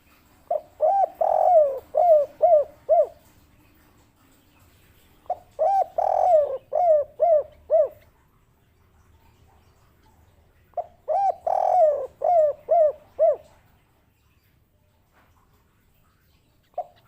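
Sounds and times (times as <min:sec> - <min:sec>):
dove cooing: 0:00.2 - 0:03.4, 0:05.2 - 0:08.3, 0:10.8 - 0:13.7.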